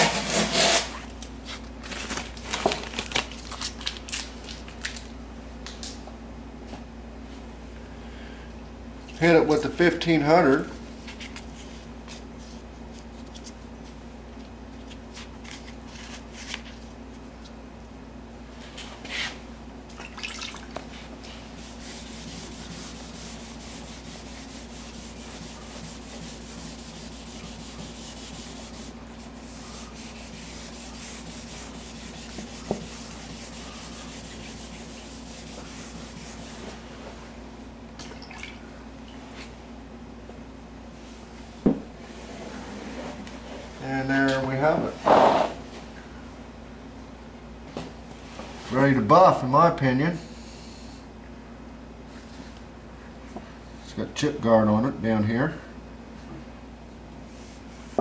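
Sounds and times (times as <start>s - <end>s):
sandpaper rubbing on metal panel: 21.6s - 36.6s.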